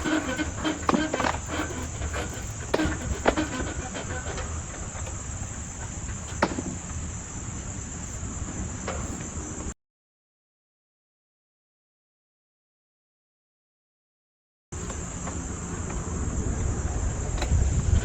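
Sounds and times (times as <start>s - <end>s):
sharp knocks: 6.3s - 6.9s.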